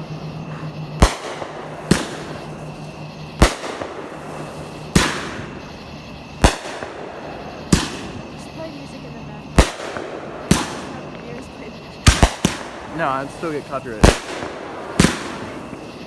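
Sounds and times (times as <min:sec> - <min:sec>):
fireworks bangs: 0:00.0 - 0:16.0
bang echo: 0:12.0 - 0:15.5.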